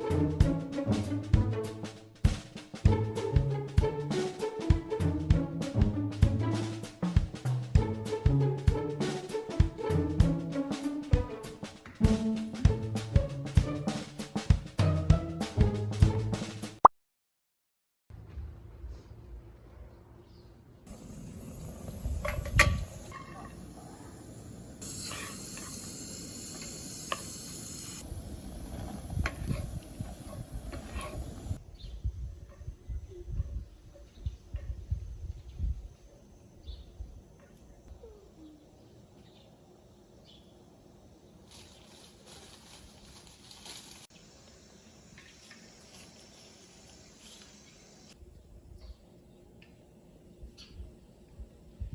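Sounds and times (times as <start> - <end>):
wind buffeting microphone: 20.9 - 24.8, 28.0 - 36.0
steady high hiss: 20.9 - 31.6, 38.8 - 48.3.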